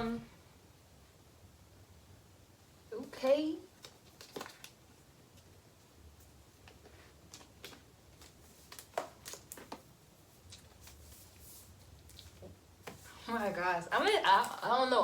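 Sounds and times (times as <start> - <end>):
packaging clicks and rustles: 3.8 - 4.8, 6.7 - 9.9.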